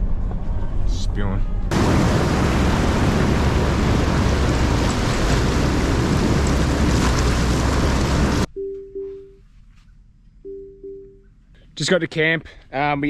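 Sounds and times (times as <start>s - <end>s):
vehicle driving: 1.7s - 8.5s
wind buffeting microphone: 1.7s - 8.5s.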